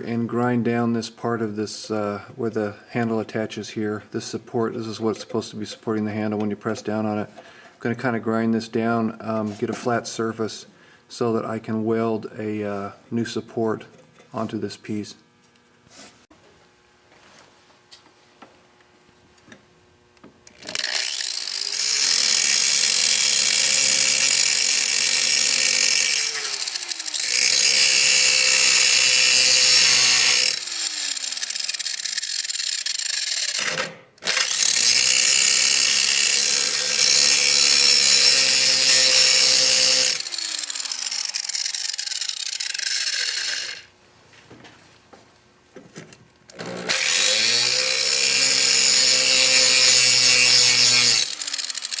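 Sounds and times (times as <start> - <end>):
angle grinder grinding steel: 20.5 - 43.9, 46.5 - 52.0.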